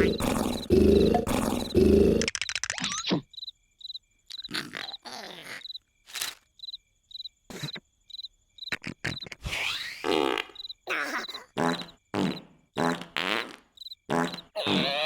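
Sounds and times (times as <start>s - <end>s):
comic snores: 0.0s - 2.3s, 8.8s - 15.0s
cartoon vocal noises: 0.0s - 3.2s, 4.4s - 5.8s, 8.7s - 10.1s, 10.8s - 13.2s, 14.2s - 15.0s
cricket chirping: 0.0s - 15.0s.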